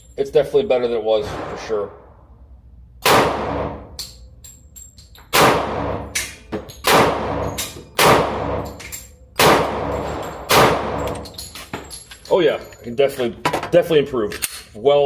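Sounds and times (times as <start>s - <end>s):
pistol shots ringing: 1.2s - 2.4s, 3.0s - 4.3s, 5.3s - 11.4s.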